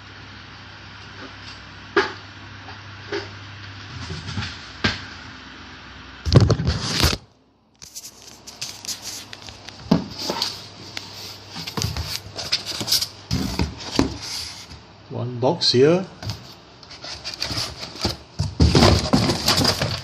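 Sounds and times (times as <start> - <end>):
handling knocks and scrapes: 7.8 - 14.8, 16.2 - 20.0.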